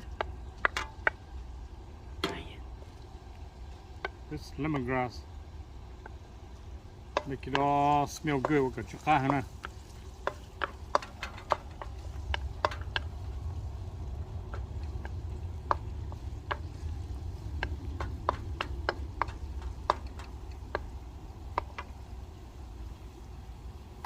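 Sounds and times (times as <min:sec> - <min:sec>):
utensil tapping against pan: 0:00.0 - 0:01.3, 0:06.9 - 0:22.1.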